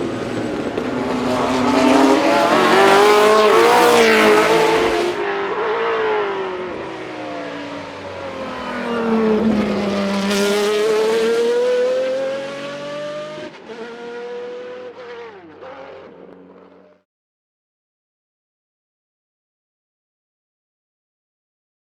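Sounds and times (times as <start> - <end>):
racing car engine accelerating: 0.0 - 17.0.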